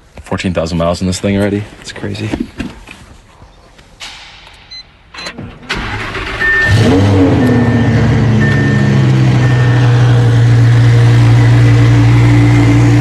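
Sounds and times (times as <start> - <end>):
clicks: 3.8 - 5.4
car engine starting and idling: 4.0 - 13.0
dashboard chime beeping: 6.3 - 11.9.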